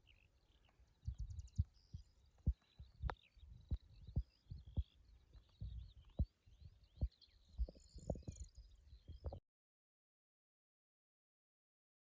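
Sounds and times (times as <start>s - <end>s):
birds chirping faintly: 0.0s - 9.4s
wind buffeting microphone: 0.9s - 9.4s.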